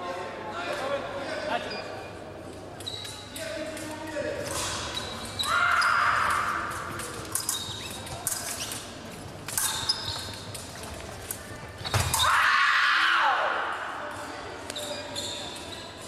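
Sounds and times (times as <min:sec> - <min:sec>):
fencing blade clicks: 0:06.2 - 0:11.5.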